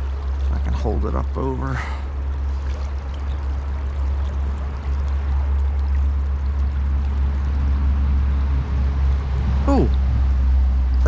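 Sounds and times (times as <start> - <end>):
river water rushing: 0.0 - 11.0.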